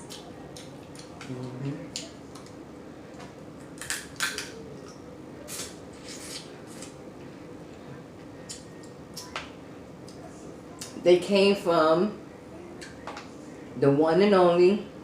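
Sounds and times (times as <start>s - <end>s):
crab shells cracking: 3.8s - 4.6s.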